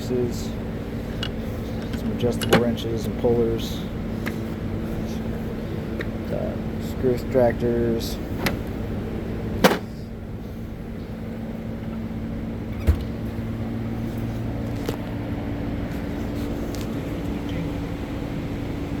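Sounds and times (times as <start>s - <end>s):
steady mechanical hum: 0.0s - 19.0s.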